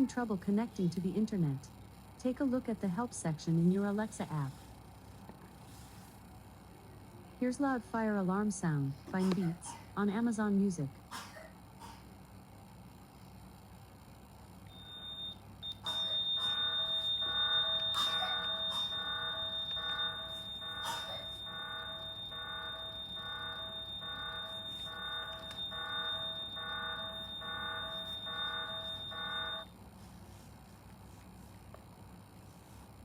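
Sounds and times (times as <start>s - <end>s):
rapidly pulsing low beep: 14.7s - 29.7s
steady high alarm tone: 14.7s - 29.7s.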